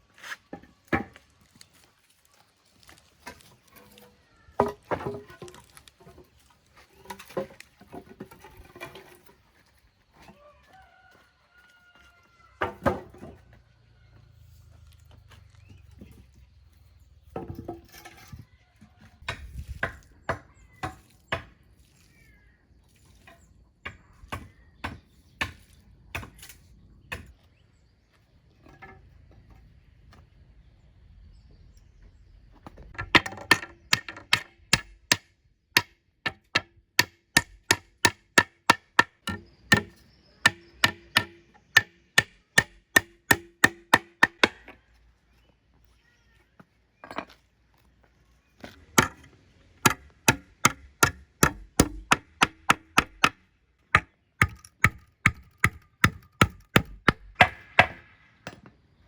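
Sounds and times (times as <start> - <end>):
hand tool striking wood: 33.0 - 44.8, 48.8 - 58.1.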